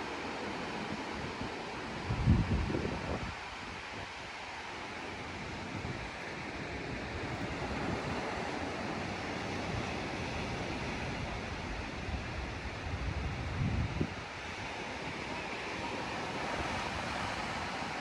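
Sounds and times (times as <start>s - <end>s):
sea waves washing onto beach: 0.0s - 18.0s
wind rumbling on microphone: 0.9s - 4.3s, 5.3s - 15.6s.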